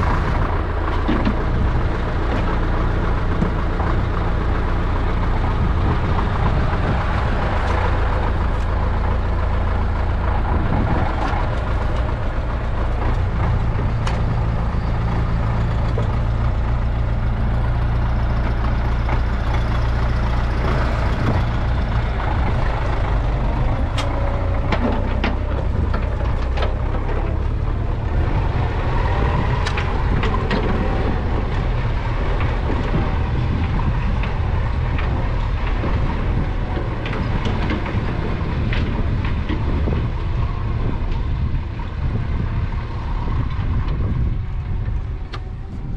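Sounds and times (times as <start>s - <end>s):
diesel engine running: 0.0s - 45.9s.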